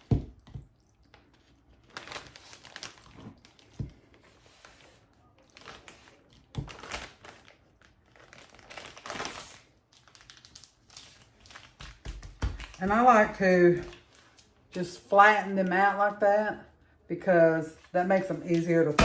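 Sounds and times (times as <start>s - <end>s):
plastic bags crinkling: 1.1s - 4.2s, 5.0s - 14.7s.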